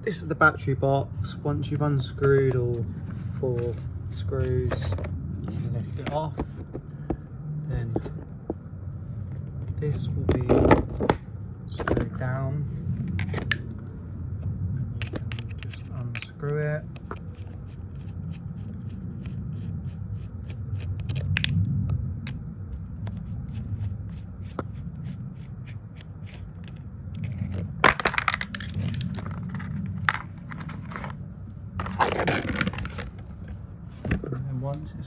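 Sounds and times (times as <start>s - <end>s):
steady low hum: 0.0s - 35.0s
plastic parts being handled: 15.0s - 21.6s, 23.1s - 31.2s, 31.8s - 34.4s
screwdriver scraping and clicking: 15.0s - 21.6s, 23.1s - 27.6s.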